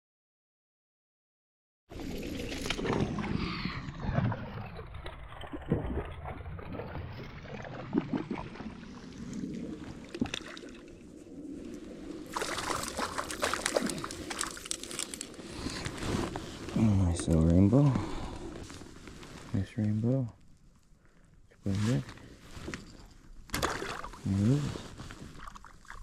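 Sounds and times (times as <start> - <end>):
water splashing around a kayak: 1.9 - 16.8, 23.5 - 26.0.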